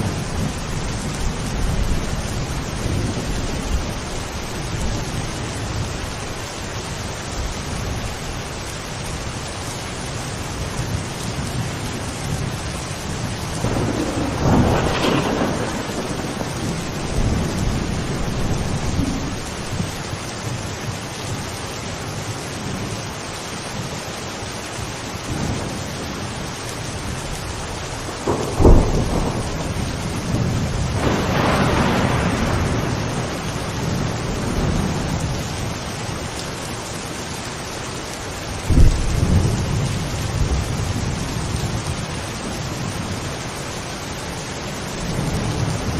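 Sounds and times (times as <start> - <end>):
thunder rumbling: 0.0 - 6.4, 10.6 - 21.0, 25.3 - 36.5, 38.5 - 43.5
steady rain falling: 0.0 - 45.9
sharp thunder crack: 13.6 - 19.4, 28.2 - 35.1.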